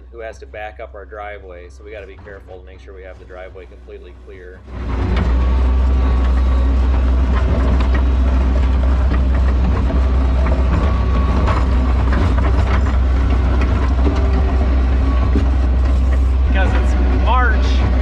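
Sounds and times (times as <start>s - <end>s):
diesel engine running under load: 0.0s - 18.0s
machine rattles and knocks: 4.7s - 18.0s.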